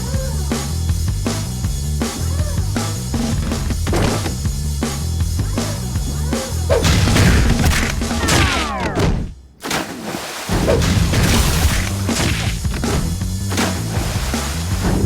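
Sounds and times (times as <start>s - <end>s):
background music: 0.0s - 8.5s, 10.7s - 15.0s
thuds and impact hits: 3.0s - 15.0s.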